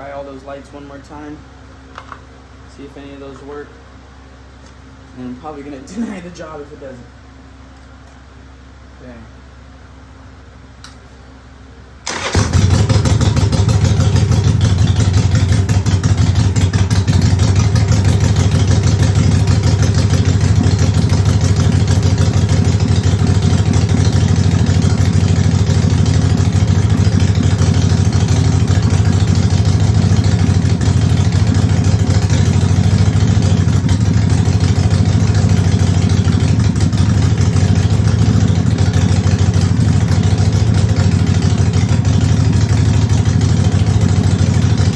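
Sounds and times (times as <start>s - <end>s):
motorcycle engine starting and idling: 12.0s - 44.9s.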